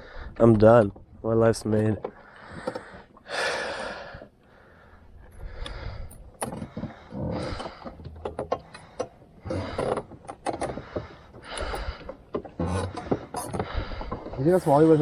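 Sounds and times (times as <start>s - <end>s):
sharp clicks and light knocks: 1.7s - 3.2s, 5.6s - 15.0s.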